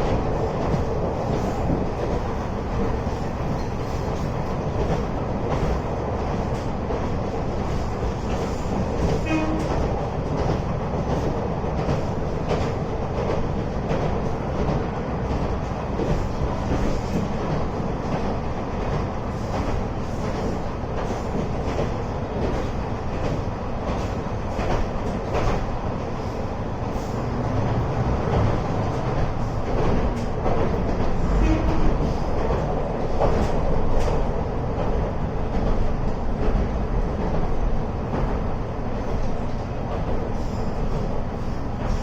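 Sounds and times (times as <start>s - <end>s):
railcar engine and wheels rumble: 0.0s - 42.0s.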